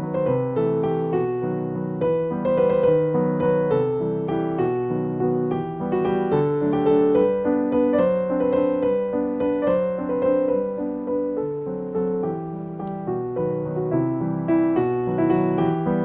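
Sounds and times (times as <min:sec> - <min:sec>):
gentle solo piano: 0:00.0 - 0:16.0.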